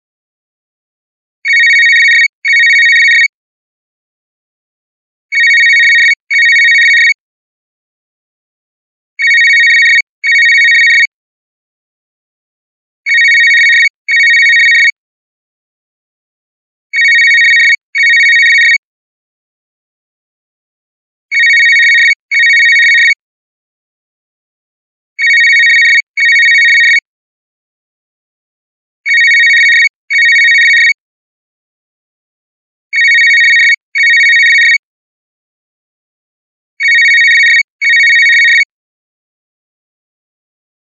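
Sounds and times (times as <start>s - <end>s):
electronic cell phone ringtone: 1.5s - 3.3s, 5.4s - 7.2s, 9.2s - 11.1s, 13.1s - 15.0s, 17.0s - 18.8s, 21.3s - 23.2s, 25.2s - 27.1s, 29.1s - 31.0s, 33.0s - 34.8s, 36.8s - 38.7s.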